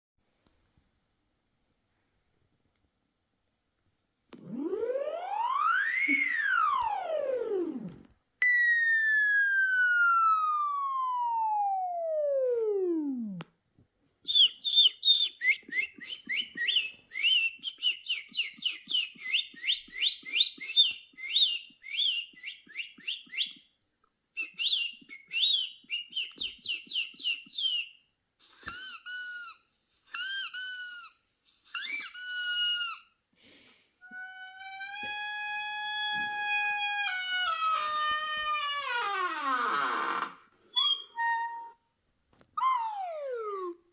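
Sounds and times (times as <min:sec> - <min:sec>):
long steady whistle tone: 0:04.4 - 0:13.4, 0:14.3 - 0:23.8, 0:24.4 - 0:29.6
rising and falling whistle calls: 0:05.1 - 0:07.8, 0:14.3 - 0:23.7, 0:24.4 - 0:33.0
bird-like chirping whistles: 0:14.3 - 0:23.7, 0:24.4 - 0:31.1.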